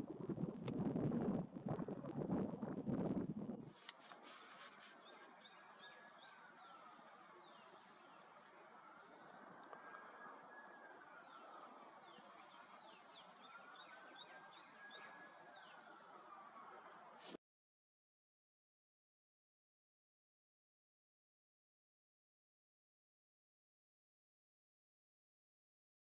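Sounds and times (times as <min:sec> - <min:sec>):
songbird chirps: 0:03.6 - 0:17.4.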